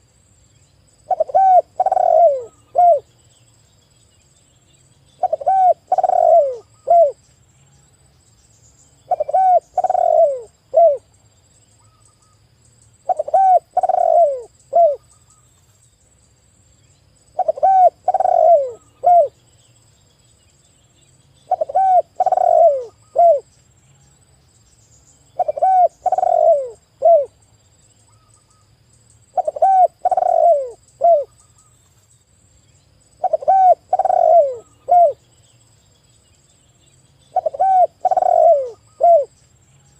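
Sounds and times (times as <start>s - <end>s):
dove cooing: 1.1s - 3.1s, 5.2s - 7.2s, 9.1s - 11.1s, 13.1s - 15.0s, 17.4s - 19.4s, 21.5s - 23.5s, 25.4s - 27.4s, 29.3s - 31.3s, 33.2s - 35.2s, 37.3s - 39.4s.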